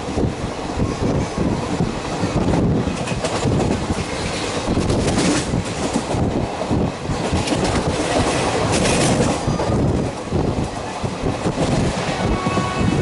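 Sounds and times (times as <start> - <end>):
passenger train rumbling past: 0.0 - 13.0
wheels clattering over rail joints: 7.1 - 10.9.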